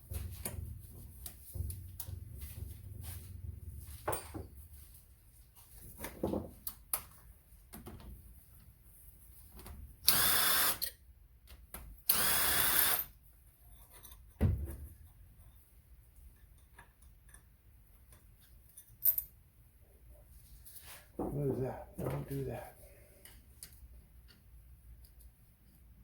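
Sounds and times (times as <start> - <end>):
parts clicking and knocking: 9.5 - 15.6, 16.2 - 19.5, 23.2 - 26.0
power drill running: 10.1 - 10.9, 12.1 - 13.1.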